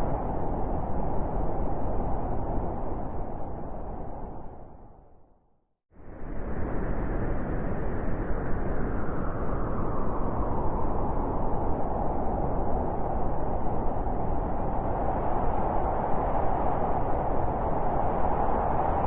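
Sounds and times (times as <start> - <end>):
wind blowing: 6.1 - 19.0.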